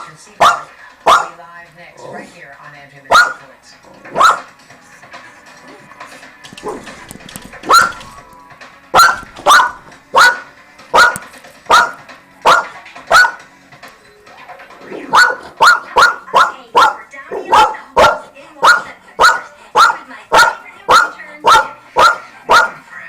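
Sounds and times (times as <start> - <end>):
dog barking: 0.4 - 1.4, 3.1 - 3.5, 4.1 - 4.5, 7.6 - 8.2, 8.9 - 13.4, 15.0 - 22.9.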